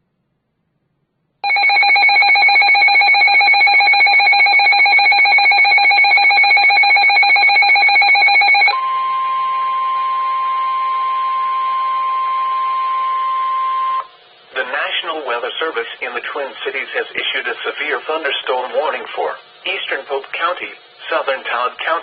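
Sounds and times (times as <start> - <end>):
trilling electronic alarm: 1.4 - 14.2
steady alarm tone: 1.4 - 14.6
radio hiss: 14.5 - 22.0.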